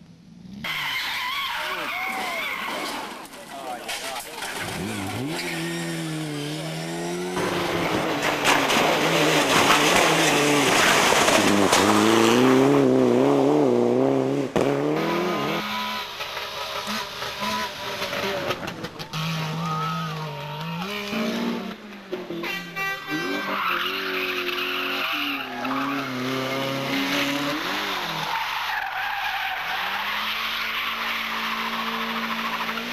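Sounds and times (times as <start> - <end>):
rally car engines revving: 0.2 - 32.9
tyre squeal: 0.6 - 3.2, 22.8 - 32.9.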